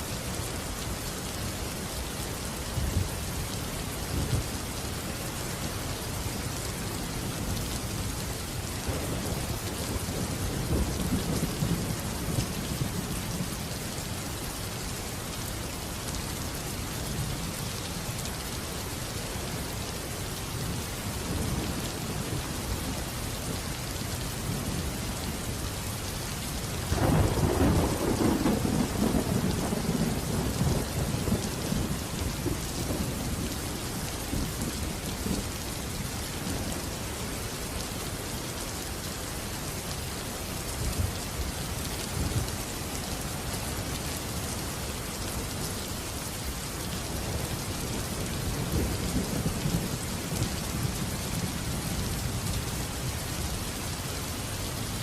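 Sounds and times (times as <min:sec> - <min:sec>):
rain falling: 0:00.0 - 0:55.0
rolling thunder: 0:26.9 - 0:33.4.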